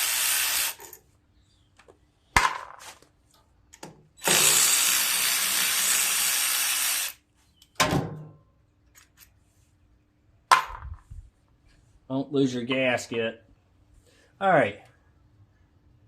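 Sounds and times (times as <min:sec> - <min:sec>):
clicks of tools and parts: 0:03.3 - 0:04.0, 0:08.8 - 0:09.4
power tool running: 0:04.2 - 0:07.2.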